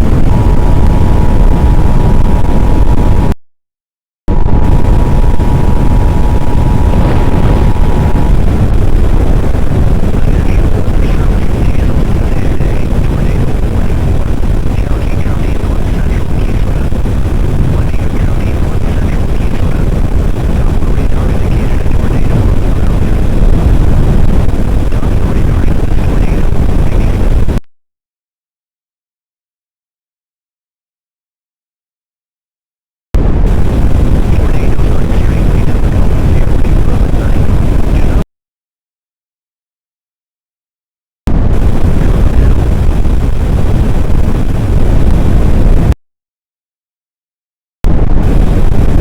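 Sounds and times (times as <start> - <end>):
wind buffeting microphone: 0.0 - 3.3, 4.3 - 27.6, 33.2 - 38.2, 41.3 - 46.0, 47.9 - 49.0.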